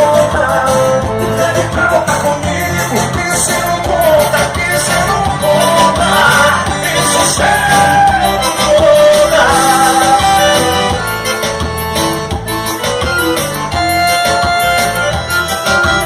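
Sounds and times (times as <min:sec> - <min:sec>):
live band instrumental music: 0:00.0 - 0:16.0.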